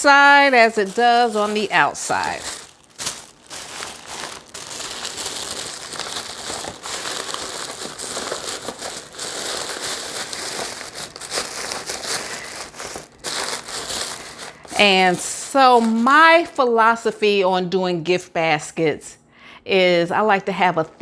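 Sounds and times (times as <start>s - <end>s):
paper crinkling and rustling: 0.0s - 16.6s.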